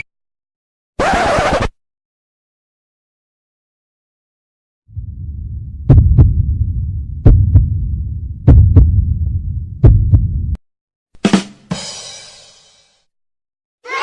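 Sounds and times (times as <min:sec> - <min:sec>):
heartbeat double thumps: 0:04.9 - 0:10.6
low throbbing drone: 0:04.9 - 0:10.6.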